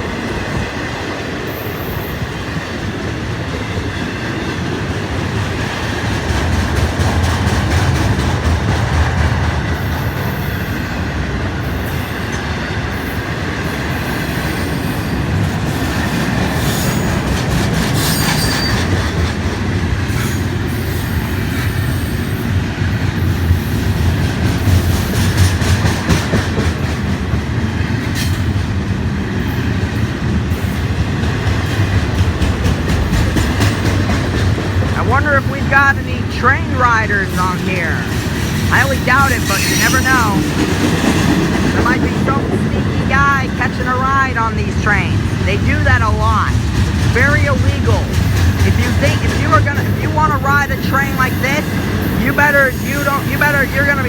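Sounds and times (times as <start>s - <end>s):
freight train rolling past: 0.0s - 54.0s
wheel-on-rail squeals: 17.9s - 19.2s
wheels clacking over rail joints: 30.4s - 35.0s.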